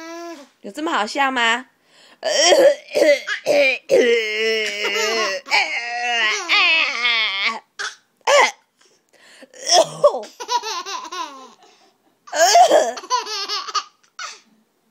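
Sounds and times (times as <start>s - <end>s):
coughing: 2.2s - 6.7s, 7.5s - 8.7s, 9.5s - 10.6s, 12.3s - 14.5s
baby giggling: 4.7s - 5.6s, 10.2s - 11.7s, 12.3s - 14.4s.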